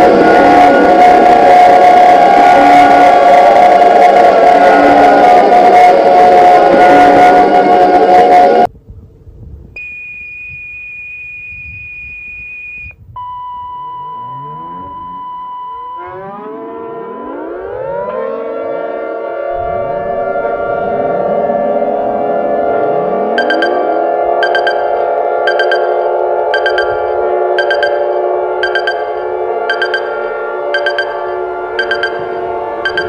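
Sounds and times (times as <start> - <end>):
sirens winding up and wailing: 0.0 - 8.7, 9.8 - 33.0
steady high beep tone: 9.8 - 16.4, 23.3 - 33.0
steady lower tone: 13.2 - 33.0.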